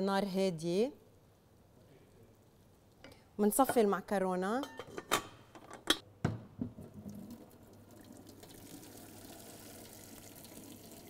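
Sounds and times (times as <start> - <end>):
water pouring into sink: 6.9 - 11.0.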